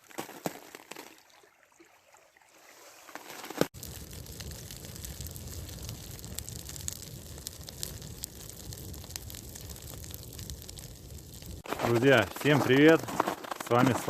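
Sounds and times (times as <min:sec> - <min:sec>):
campfire crackling and popping: 0:03.3 - 0:14.0.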